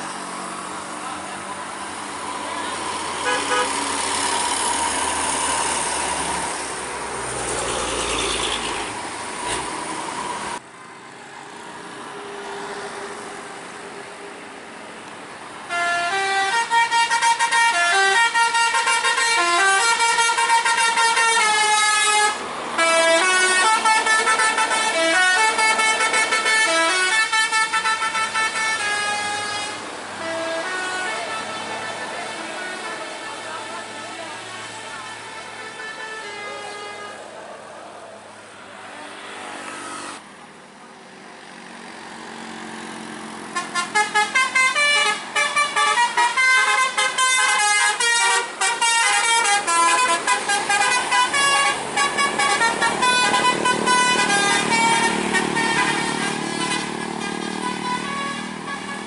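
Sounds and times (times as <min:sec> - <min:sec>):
traffic noise: 0:00.0 - 0:59.0
held horn-like tone: 0:43.6 - 0:59.0
musical air horn tune: 0:43.6 - 0:59.0.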